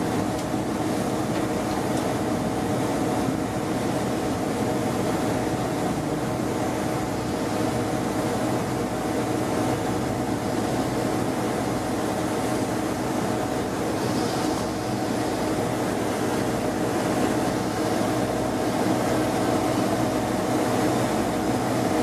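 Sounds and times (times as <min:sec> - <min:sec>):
train carriage hum: 0:00.0 - 0:22.0.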